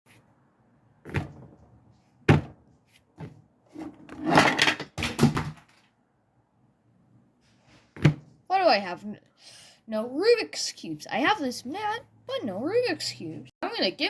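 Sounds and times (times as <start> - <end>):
clattering and rummaging: 1.0 - 5.9
knocks and thuds: 1.1 - 1.6, 2.3 - 2.6, 8.0 - 8.3.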